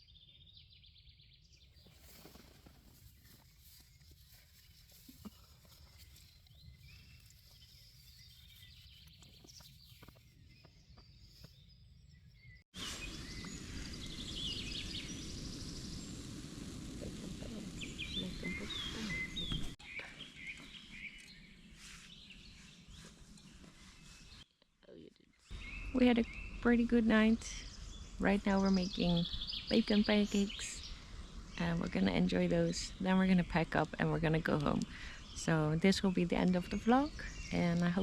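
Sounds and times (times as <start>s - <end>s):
low rumble: 12.8s - 19.8s, 25.5s - 37.4s
birds chirping and calling: 17.1s - 24.4s, 25.5s - 38.0s.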